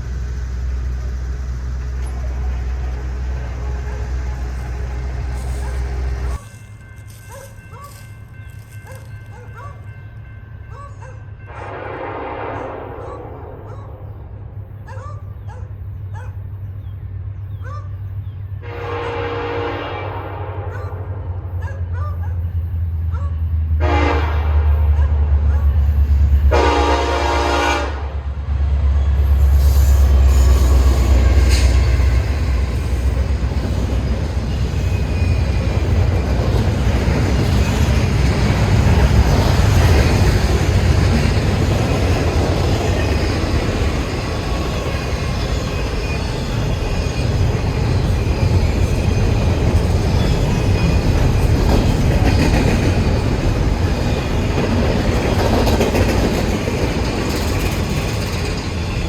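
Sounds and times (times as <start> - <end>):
freight train rumbling: 0.0 - 59.0
high wheel squeals: 29.0 - 36.5.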